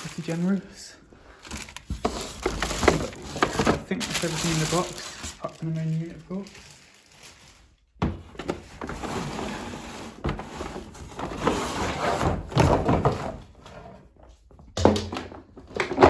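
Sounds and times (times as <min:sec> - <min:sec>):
cardboard scraping and rustling: 0:01.5 - 0:07.6, 0:08.2 - 0:14.0.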